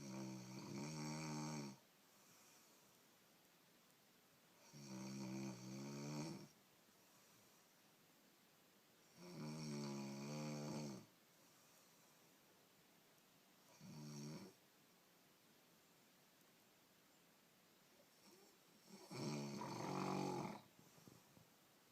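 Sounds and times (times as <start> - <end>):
woman snoring: 0.0 - 1.8, 4.6 - 6.5, 9.1 - 11.1, 13.7 - 14.6, 18.2 - 20.7.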